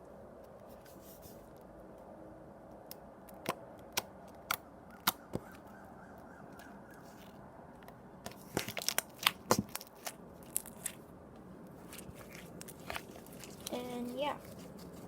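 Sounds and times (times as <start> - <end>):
slime clicking and popping: 8.5 - 11.0.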